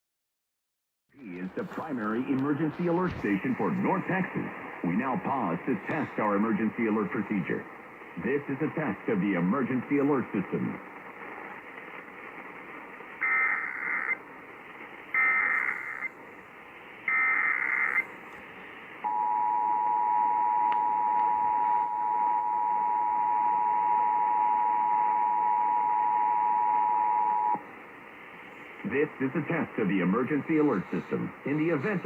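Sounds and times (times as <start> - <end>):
radio hiss: 1.1 - 32.0
buzzy digital data bursts: 13.2 - 14.2, 15.1 - 16.1, 17.0 - 18.1.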